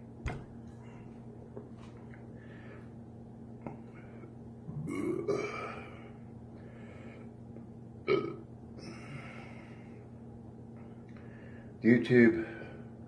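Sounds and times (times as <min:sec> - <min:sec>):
man belching: 0:04.7 - 0:05.7, 0:08.1 - 0:08.4.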